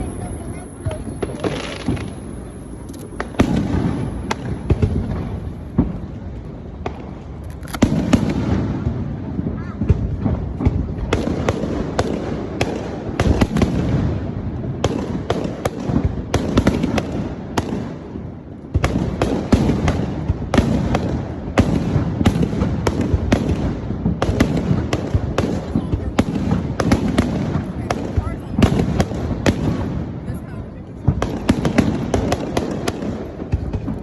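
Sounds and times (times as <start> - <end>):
firework bangs and crackles: 0.0 - 34.0
rumble of booms: 3.2 - 16.3.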